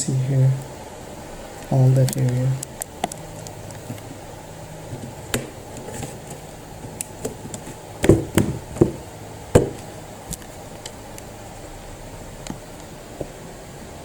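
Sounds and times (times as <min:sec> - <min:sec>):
laptop cover being pried open: 0:04.9 - 0:09.0.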